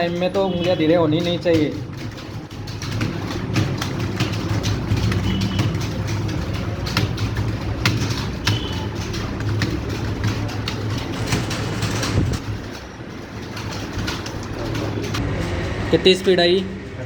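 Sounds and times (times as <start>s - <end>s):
keyboards clattering: 0.0s - 17.0s.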